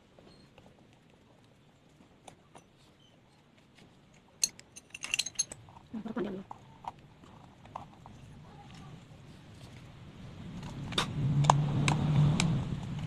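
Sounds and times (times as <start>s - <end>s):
metallic clinks and rattling: 4.4s - 6.0s.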